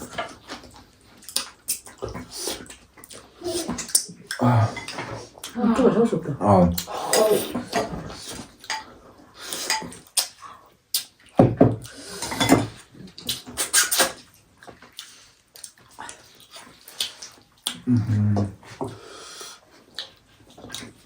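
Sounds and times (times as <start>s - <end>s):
chewing: 0.0s - 5.6s, 6.8s - 18.8s, 19.7s - 21.0s
dishes clinking: 12.2s - 12.8s.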